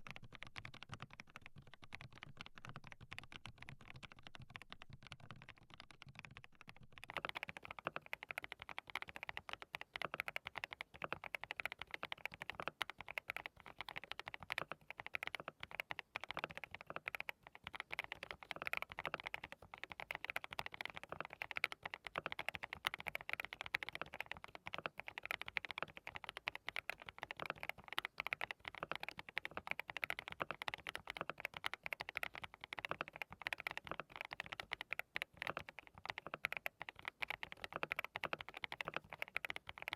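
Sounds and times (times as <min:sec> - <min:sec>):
rapid mechanical keyboard typing: 0:00.0 - 0:39.9.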